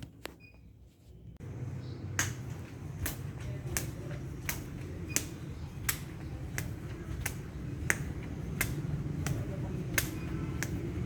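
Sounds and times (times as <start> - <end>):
steady low hum: 1.3 - 11.0
sharp clicks: 2.2 - 2.4, 3.0 - 10.8.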